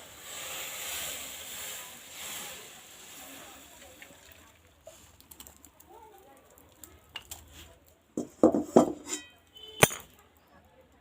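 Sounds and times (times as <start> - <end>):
tea pouring: 0.0 - 7.5.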